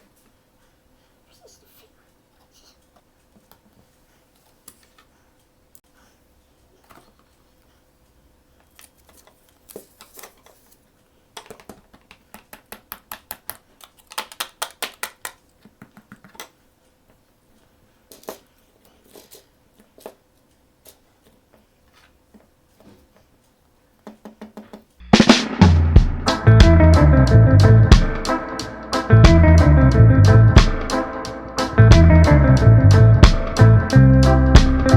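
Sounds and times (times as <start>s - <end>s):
rapid evenly spaced clicks: 27.9s - 29.5s, 30.6s - 32.1s.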